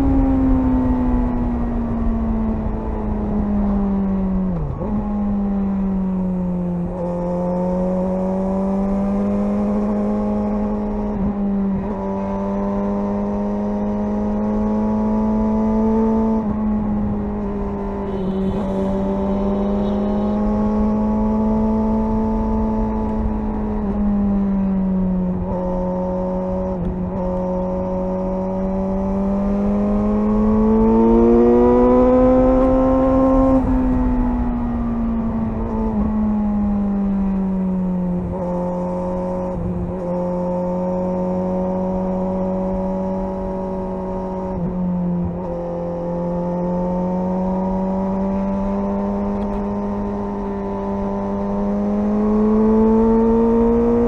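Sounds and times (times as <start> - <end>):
motorcycle engine running: 15.3 - 25.9.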